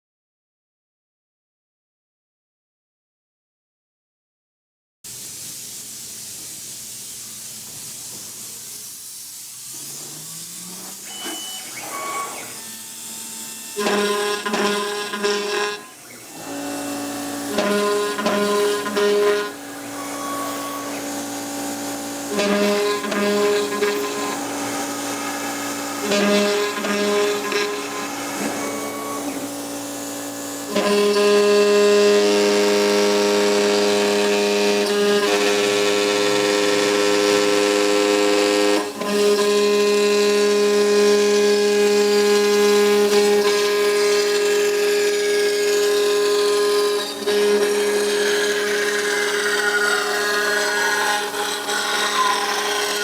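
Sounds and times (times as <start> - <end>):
machine motor hum: 9.0 - 53.0
pulsing pitched whine: 9.7 - 30.7, 45.0 - 53.0.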